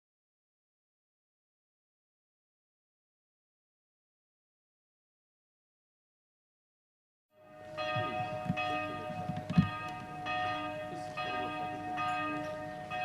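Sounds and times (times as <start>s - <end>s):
church bells ringing: 7.4s - 13.0s.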